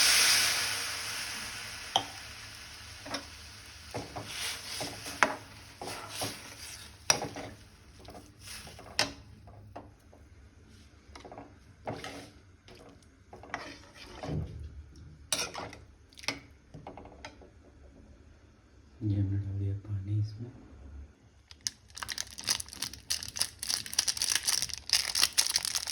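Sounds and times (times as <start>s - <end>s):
light sizzle: 0.0s - 14.1s, 21.5s - 25.9s
spoon knocking and scraping in pan: 3.0s - 9.9s.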